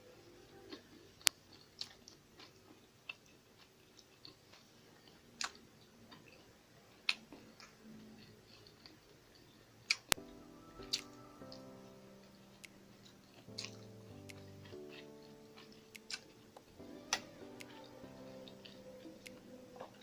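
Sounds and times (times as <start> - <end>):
person chewing food: 0.6 - 10.2, 12.5 - 20.0
soft sharp clicks: 9.9 - 20.0.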